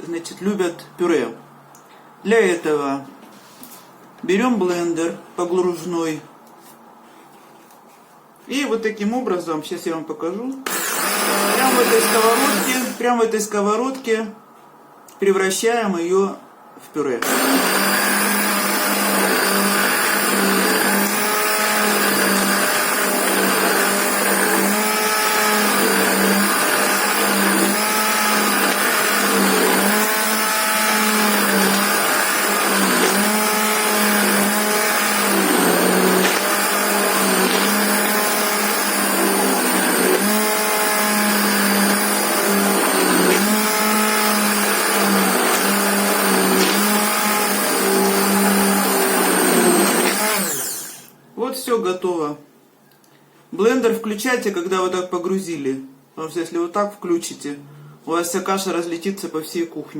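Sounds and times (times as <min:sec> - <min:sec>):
stick blender motor whining: 0:10.6 - 0:13.0, 0:17.2 - 0:51.2.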